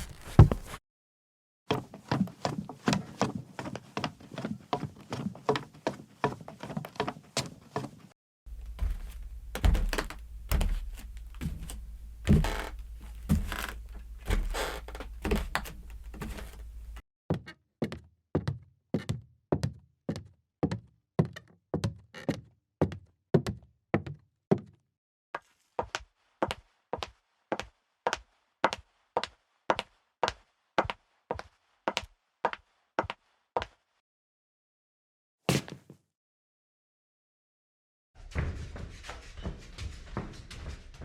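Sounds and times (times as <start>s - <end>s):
footsteps on wooden floor: 0.0s - 0.8s, 1.7s - 17.0s, 38.2s - 41.0s
low steady hum: 8.5s - 17.0s.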